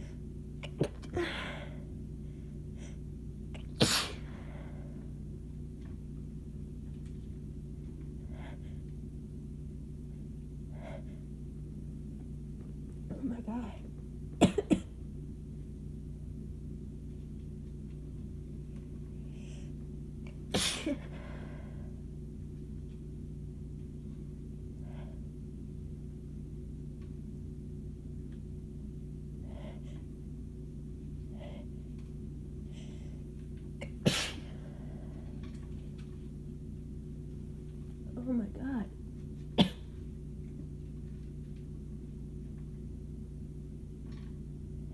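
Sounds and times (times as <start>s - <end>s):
low background hum: 0.0s - 44.9s
woman sneezing: 3.6s - 4.3s, 20.5s - 21.1s, 33.9s - 34.5s.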